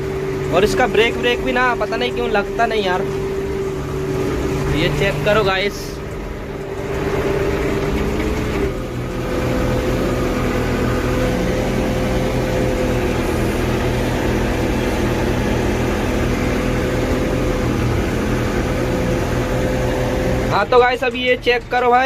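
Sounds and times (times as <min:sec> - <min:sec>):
diesel engine running: 0:00.0 - 0:22.0
steady whine: 0:00.0 - 0:22.0.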